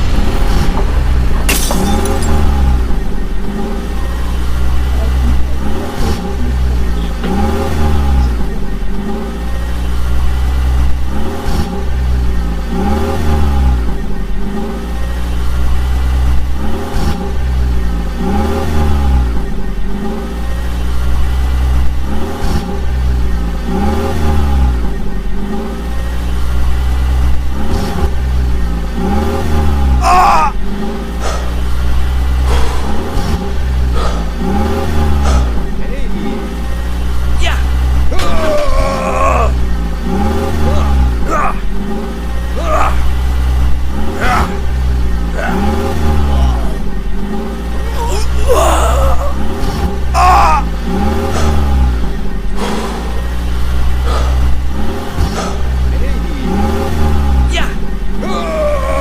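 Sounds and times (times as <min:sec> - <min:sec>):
constant low drone: 0:00.0 - 0:59.0
vehicle engine revving: 0:00.0 - 0:59.0.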